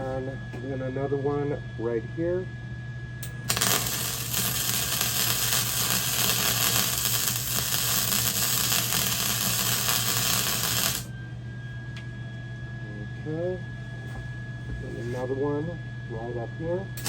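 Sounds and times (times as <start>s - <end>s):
welding arc crackling and hissing: 3.2s - 11.1s.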